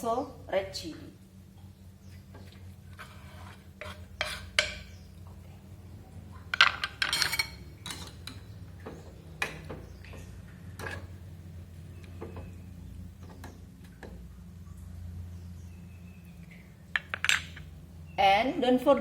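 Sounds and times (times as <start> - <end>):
low steady hum: 0.0 - 19.0
utensils clattering against pot: 3.8 - 4.9, 6.5 - 9.8, 10.8 - 11.2.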